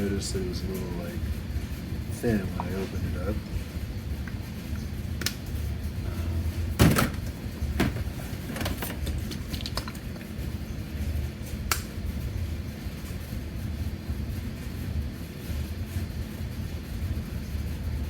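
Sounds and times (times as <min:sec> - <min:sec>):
steady low hum: 0:00.0 - 0:18.0
plastic bottles clicking: 0:07.8 - 0:10.2.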